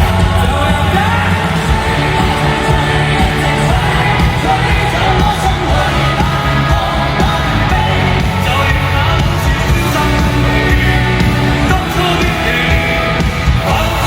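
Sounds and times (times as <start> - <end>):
live pop-rock band: 0.0 - 14.0
person singing: 0.0 - 14.0.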